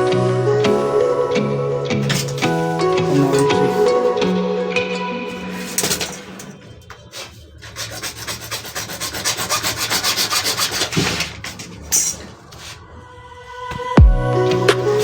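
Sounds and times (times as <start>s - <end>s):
fast scraping strokes on pipe fitting: 7.1s - 11.6s.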